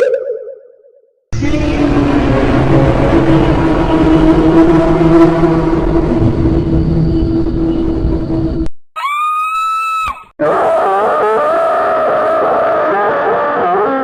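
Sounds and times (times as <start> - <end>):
wavering voice-like groan: 10.4 - 14.0.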